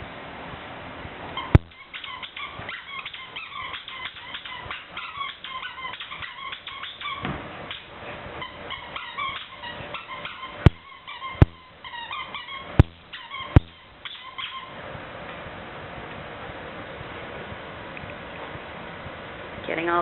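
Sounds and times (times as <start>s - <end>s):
dogs yipping and whimpering: 1.4s - 14.8s.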